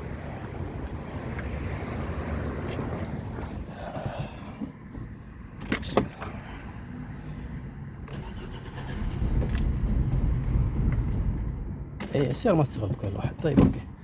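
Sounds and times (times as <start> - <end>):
engine cranking without starting: 8.1 - 12.2.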